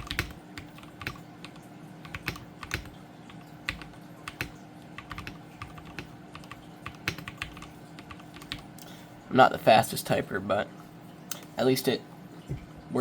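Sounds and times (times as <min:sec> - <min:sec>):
mechanical keyboard typing: 0:00.0 - 0:08.6.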